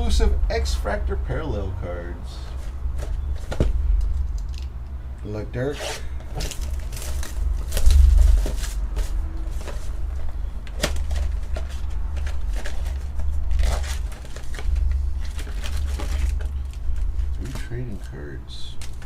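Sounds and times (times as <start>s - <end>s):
low handling rumble: 0.0s - 18.8s
card packs crinkling and tearing: 5.7s - 19.0s.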